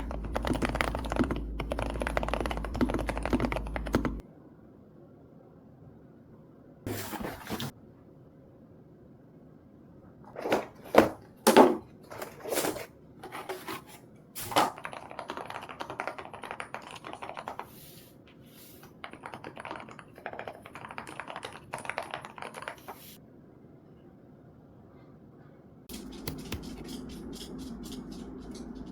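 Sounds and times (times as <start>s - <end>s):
typing on mechanical keyboard: 0.0s - 4.2s, 14.8s - 17.6s, 19.0s - 22.8s.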